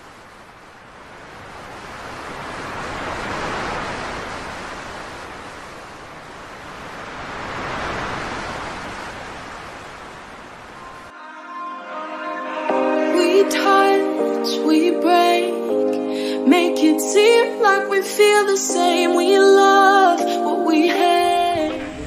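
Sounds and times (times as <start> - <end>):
ocean waves washing on beach: 0.0 - 11.1.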